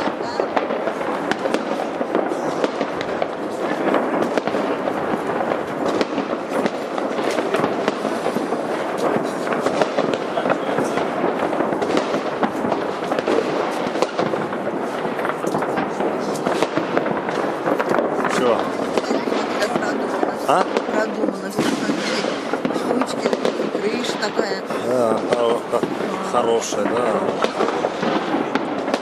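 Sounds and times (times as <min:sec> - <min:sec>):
fireworks popping and crackling: 0:00.0 - 0:29.0.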